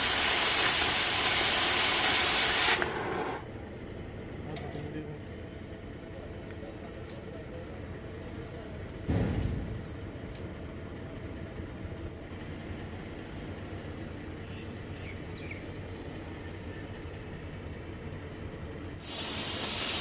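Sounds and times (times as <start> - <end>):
hiss of air or spray: 0.0 - 3.4, 19.0 - 20.0
low mechanical rumble: 0.0 - 19.1.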